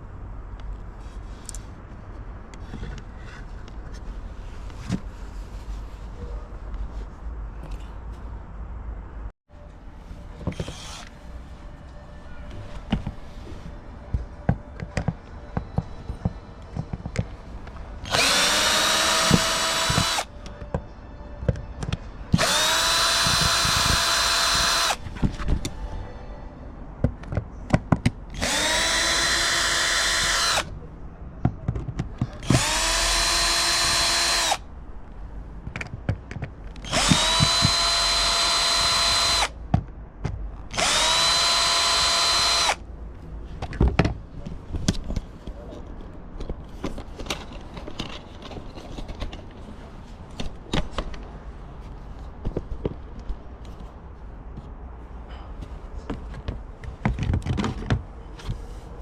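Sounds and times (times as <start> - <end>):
power drill motor whining: 10.5 - 11.1, 18.0 - 20.3, 22.4 - 25.0, 28.4 - 30.7, 32.4 - 34.6, 36.8 - 39.5, 40.7 - 42.8
handling knocks and clicks: 14.1 - 17.8, 31.4 - 32.4, 35.6 - 37.7, 43.6 - 49.7, 56.1 - 58.6.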